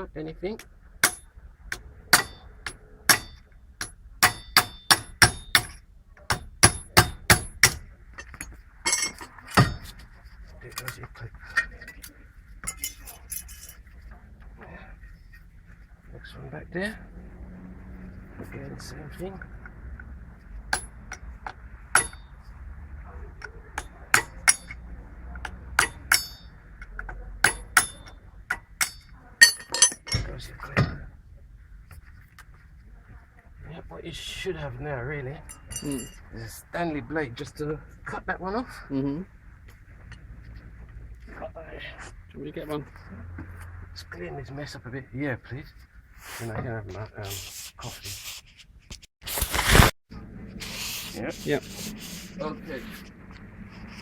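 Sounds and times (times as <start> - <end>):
hammer tapping metal: 1.0 - 9.9, 20.7 - 22.3, 23.4 - 30.3.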